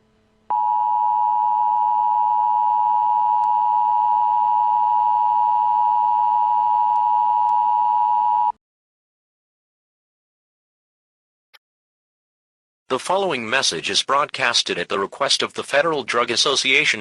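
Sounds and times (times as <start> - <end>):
two-tone attention signal: 0.5 - 8.5.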